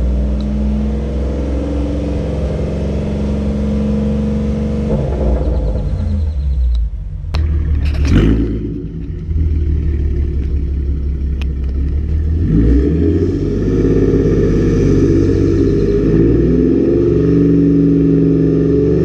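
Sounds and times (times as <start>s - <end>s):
car engine running: 0.0s - 19.0s.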